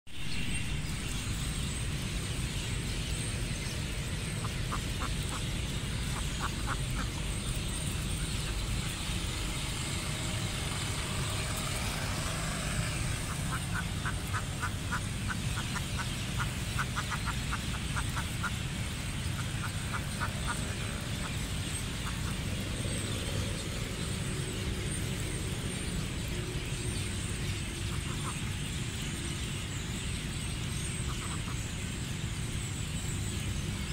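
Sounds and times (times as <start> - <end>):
ducks quacking: 4.4 - 7.3, 13.1 - 22.5, 27.9 - 28.5, 31.0 - 31.6.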